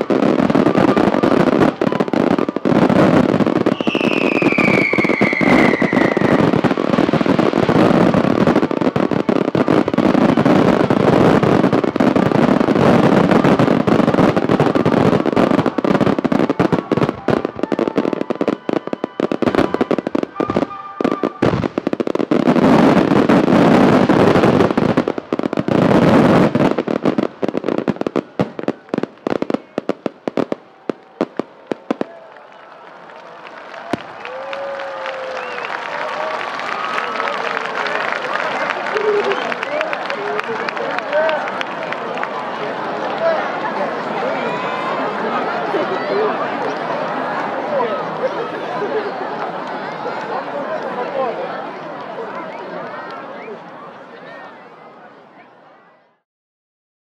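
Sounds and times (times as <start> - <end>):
fireworks bursting and crackling: 0.0 - 50.9
firework whistle falling in pitch: 3.7 - 6.6, 17.7 - 21.7.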